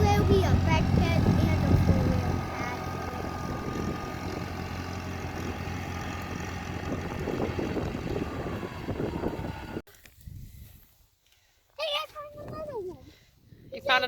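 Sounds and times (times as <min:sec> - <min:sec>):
engine running hum: 0:00.0 - 0:09.8.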